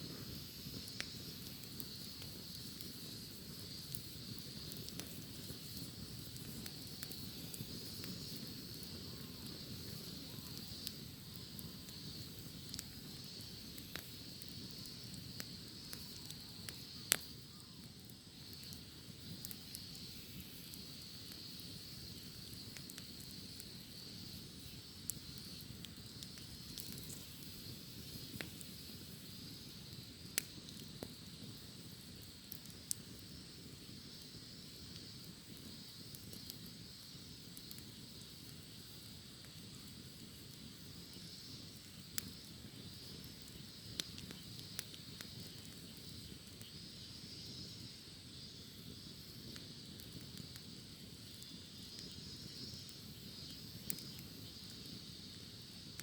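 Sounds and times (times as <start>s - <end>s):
wood fire crackling: 0.0s - 56.0s
cicadas singing: 31.4s - 55.9s.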